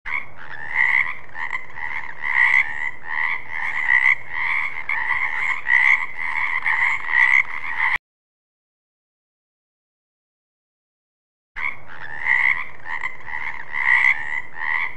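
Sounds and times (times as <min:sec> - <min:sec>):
frogs croaking: 0:00.1 - 0:08.0, 0:11.6 - 0:14.9.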